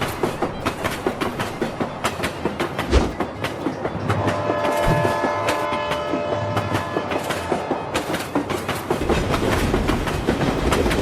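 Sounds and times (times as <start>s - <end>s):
train wheels clacking over rail joints: 0.0s - 11.0s
train horn: 4.2s - 7.6s.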